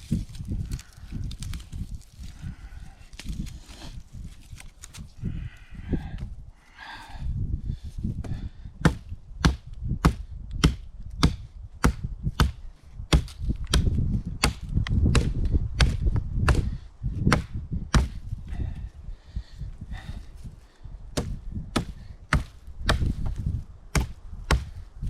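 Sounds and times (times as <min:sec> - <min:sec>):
axe chopping firewood: 0:08.2 - 0:18.2, 0:21.1 - 0:24.9.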